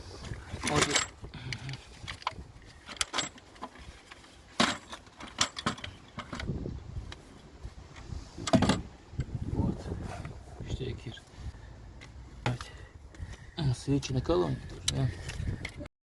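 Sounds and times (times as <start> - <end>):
metallic clicks and jangling of tools: 0.6 - 3.8.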